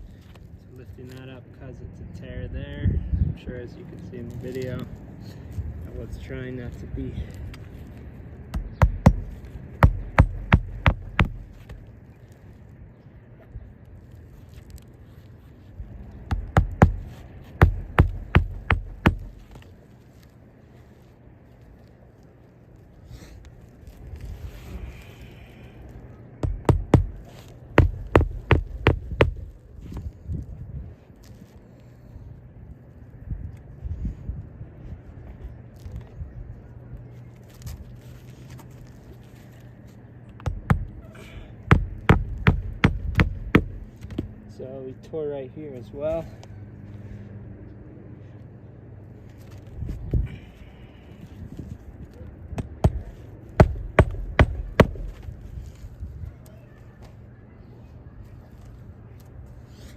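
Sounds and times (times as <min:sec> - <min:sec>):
low steady hum: 0:00.0 - 0:59.9
hammer striking nails: 0:08.5 - 0:11.4, 0:16.3 - 0:19.4, 0:26.4 - 0:27.2, 0:27.8 - 0:29.4, 0:40.4 - 0:41.0, 0:41.7 - 0:44.2, 0:52.6 - 0:55.1.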